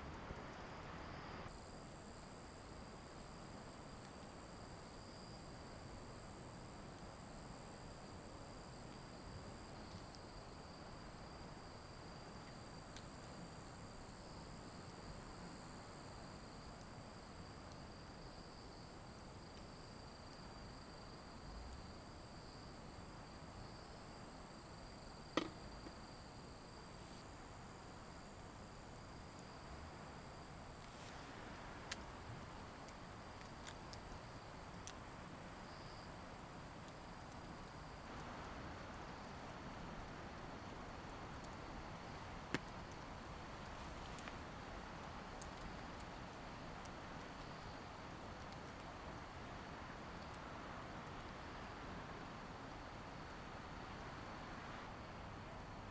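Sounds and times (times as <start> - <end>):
insects chirring: 23.4 - 27.2.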